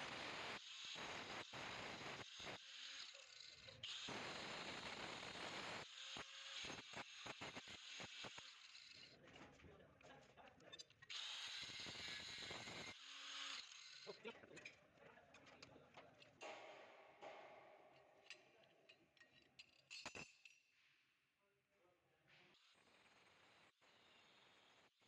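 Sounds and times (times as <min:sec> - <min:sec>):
sharp metal clicks and clinks: 0:18.0 - 0:20.6.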